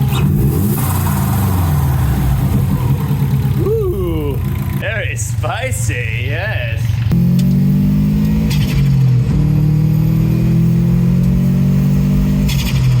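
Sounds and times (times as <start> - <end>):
car engine accelerating: 0.0 - 4.9, 6.8 - 13.0.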